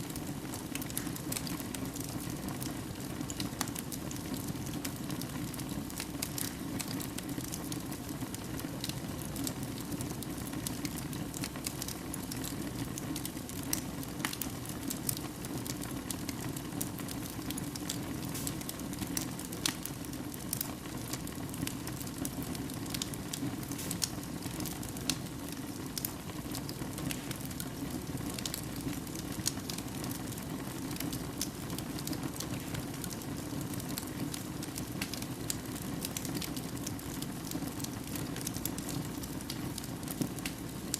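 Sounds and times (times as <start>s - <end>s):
fire crackling and popping: 0.0s - 40.9s
fire hissing: 17.3s - 19.9s, 20.5s - 40.9s.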